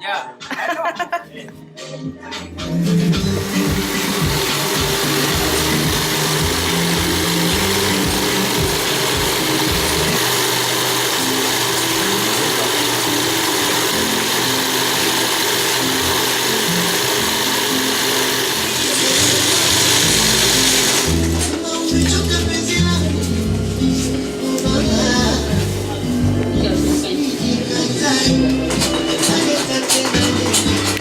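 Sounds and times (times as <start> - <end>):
sewing machine running: 2.8 - 22.5, 28.1 - 31.0.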